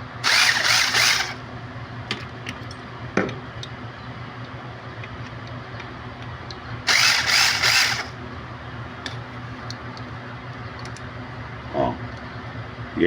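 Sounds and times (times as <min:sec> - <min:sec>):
power screwdriver running: 0:00.2 - 0:01.4, 0:06.9 - 0:08.2.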